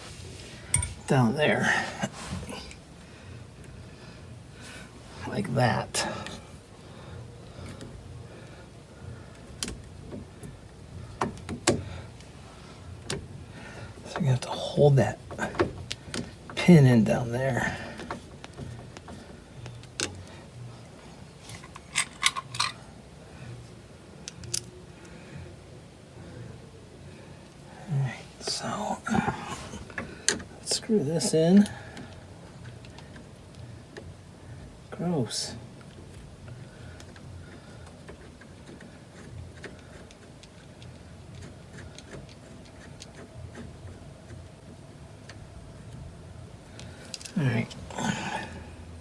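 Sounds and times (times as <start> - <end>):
small metal parts handled: 0.7 - 1.1, 21.4 - 22.9.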